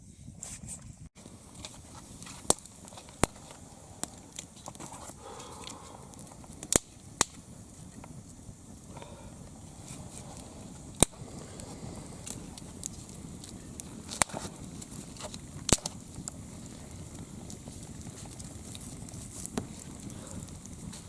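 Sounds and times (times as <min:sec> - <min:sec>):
campfire crackling: 0:01.2 - 0:21.0
sharp loud fire pops: 0:10.8 - 0:16.4.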